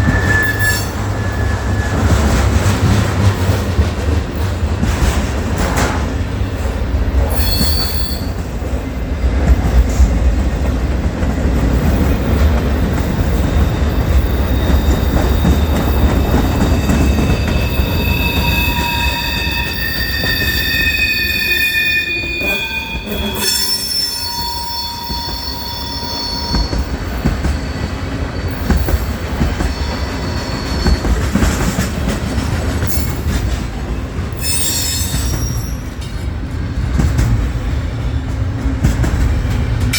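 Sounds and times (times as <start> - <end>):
wheel squeal: 0.0 - 2.4, 7.3 - 8.4, 14.0 - 26.8, 27.4 - 31.3, 34.4 - 35.9
train rumbling: 0.0 - 39.9.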